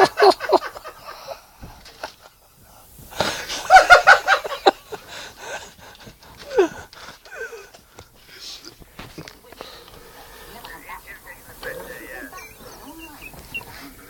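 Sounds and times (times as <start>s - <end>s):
burst of laughter: 0.0s - 2.5s, 3.1s - 7.8s
men stifling laughter: 0.0s - 9.4s, 11.5s - 14.0s.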